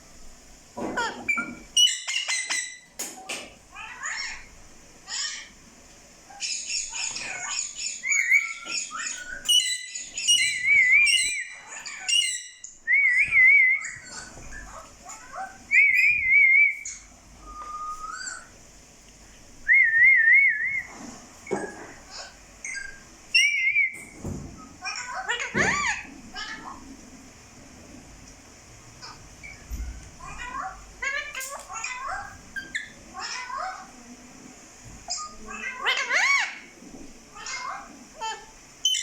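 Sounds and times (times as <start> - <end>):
parrot whistling and chirping: 1.2 - 2.9, 6.4 - 18.5, 19.6 - 20.9, 22.6 - 26.0, 29.4 - 33.7, 37.4 - 39.0.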